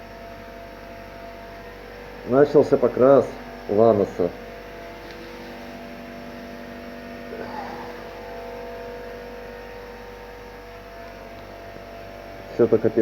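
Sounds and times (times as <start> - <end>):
steady machine hum: 0.0 - 13.0.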